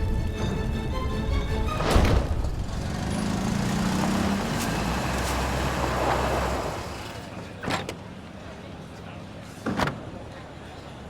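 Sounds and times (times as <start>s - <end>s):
vehicle engine rumbling: 0.0s - 7.6s.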